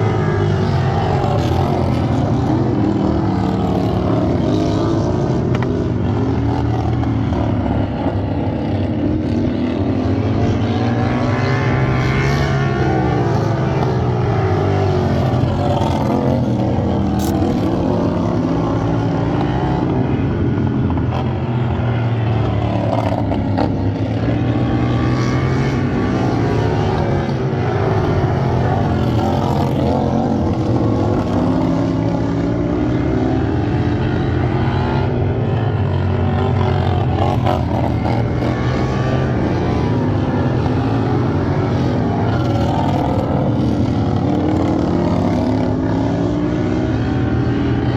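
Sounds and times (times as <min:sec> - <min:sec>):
lawn tractor engines revving: 0:00.0 - 0:47.9.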